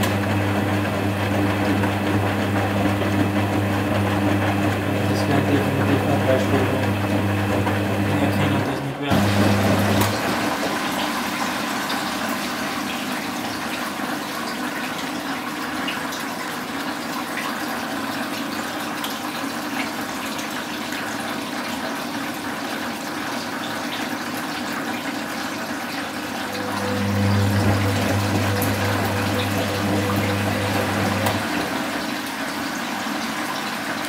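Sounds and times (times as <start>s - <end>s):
washing machine water rushing: 0.0s - 34.0s
low machine hum: 26.2s - 32.2s.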